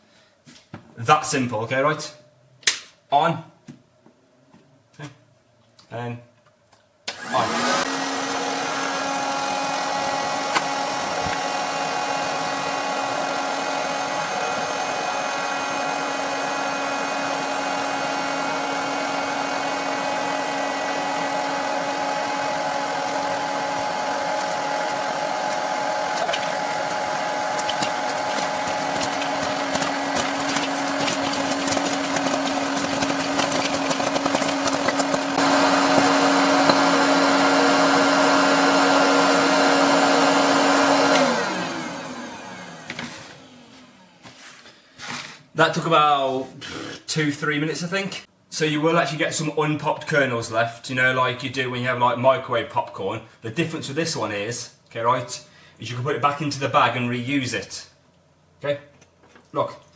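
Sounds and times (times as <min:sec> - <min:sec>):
popcorn maker fan whirring: 0:07.1 - 0:45.4
popcorn kernels popping: 0:23.0 - 0:37.0.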